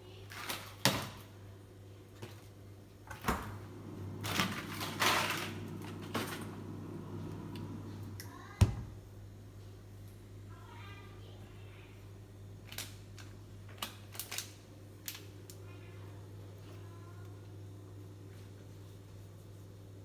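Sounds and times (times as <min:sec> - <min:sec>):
low steady hum: 0:01.5 - 0:13.9.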